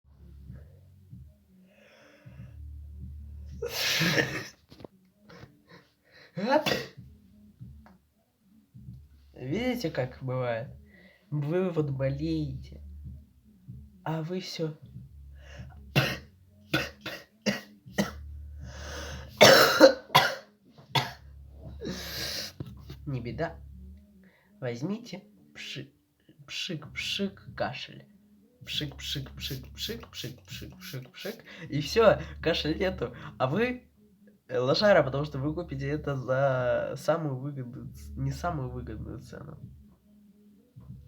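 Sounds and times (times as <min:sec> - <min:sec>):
person breathing in: 0:01.6 - 0:02.5, 0:18.6 - 0:19.4, 0:21.8 - 0:22.6
person coughing harshly: 0:03.6 - 0:04.6, 0:06.4 - 0:07.0, 0:16.0 - 0:18.2, 0:19.4 - 0:21.2.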